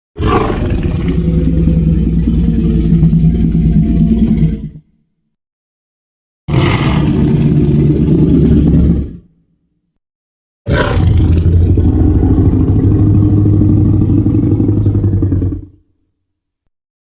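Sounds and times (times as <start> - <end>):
dinosaur roar: 0.2 - 4.8, 6.5 - 9.3, 10.7 - 15.8.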